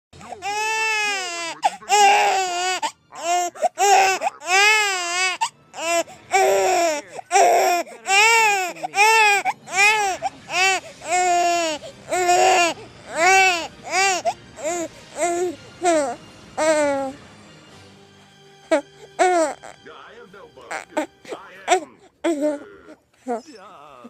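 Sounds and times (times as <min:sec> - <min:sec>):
infant crying: 0:00.2 - 0:17.2, 0:18.6 - 0:19.8, 0:20.7 - 0:23.6
infant catching breath: 0:01.6 - 0:04.4, 0:05.4 - 0:09.6, 0:20.8 - 0:23.6.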